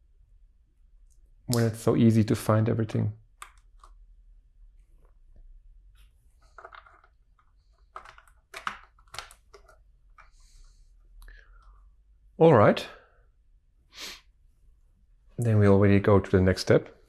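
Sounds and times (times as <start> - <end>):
plastic bricks clicking and rustling: 6.4 - 10.3.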